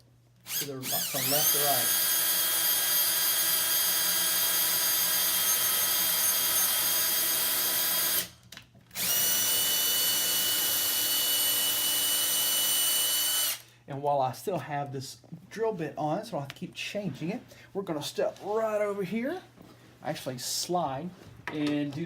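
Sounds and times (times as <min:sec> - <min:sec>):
electric drill boring into wood: 0:00.5 - 0:08.3, 0:09.0 - 0:13.6.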